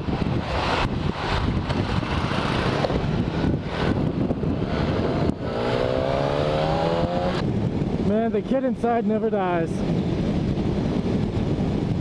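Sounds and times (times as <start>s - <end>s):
motorcycle engine accelerating: 0.0s - 8.1s
wind noise on microphone: 0.0s - 12.0s.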